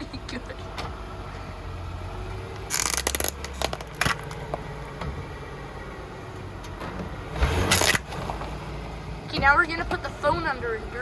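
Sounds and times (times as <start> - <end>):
car engine idling: 0.0 - 11.0
sharp clicks and knocks: 2.6 - 5.3
loud scraping rustle: 2.7 - 4.4, 7.3 - 8.6.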